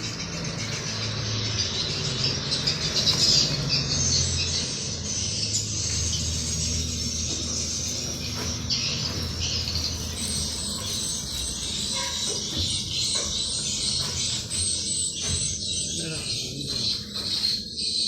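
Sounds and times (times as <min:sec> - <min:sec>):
low hum: 0:01.0 - 0:14.0.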